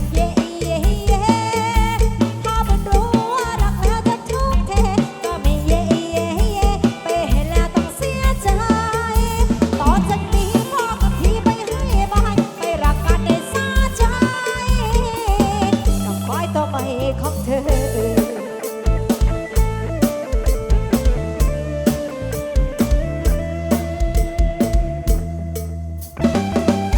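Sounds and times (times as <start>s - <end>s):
live band music: 0.0s - 26.9s.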